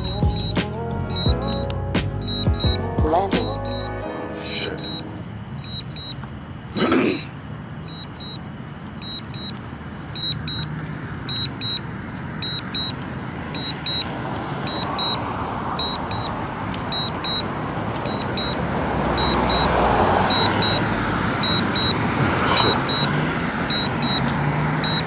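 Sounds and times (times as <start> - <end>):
remote controller warning beeps: 0.0 - 6.4, 7.8 - 15.2, 15.8 - 22.0, 22.6 - 25.0
steady rushing noise: 9.0 - 25.0.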